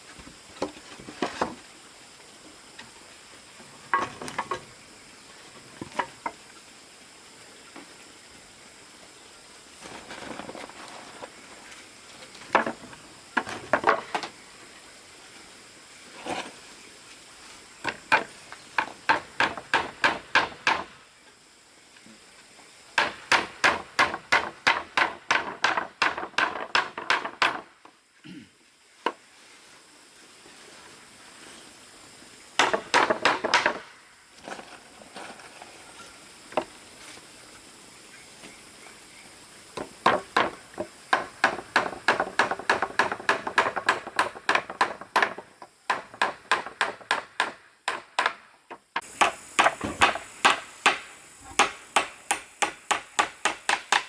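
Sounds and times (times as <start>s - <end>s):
hand tool striking wood: 17.8s - 21.0s, 23.0s - 27.7s, 32.6s - 34.0s, 39.8s - 54.0s.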